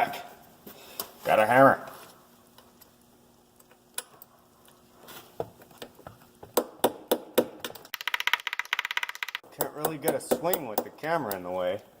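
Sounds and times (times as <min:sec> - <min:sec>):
rattle of clicks: 0:07.8 - 0:09.4.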